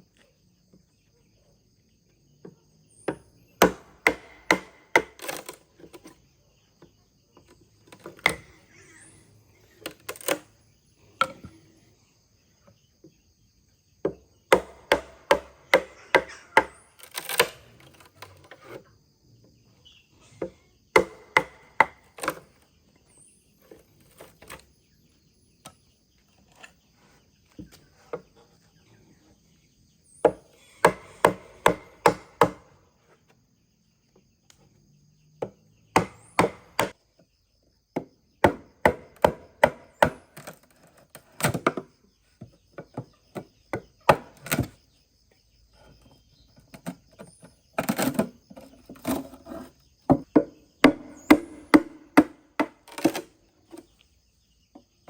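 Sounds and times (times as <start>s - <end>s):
insects chirring: 0.0s - 55.0s
blade chopping bamboo: 3.6s - 5.6s, 14.5s - 18.8s, 21.0s - 22.5s, 30.3s - 32.7s, 36.0s - 37.0s, 38.0s - 41.8s, 47.8s - 48.3s, 48.9s - 53.3s.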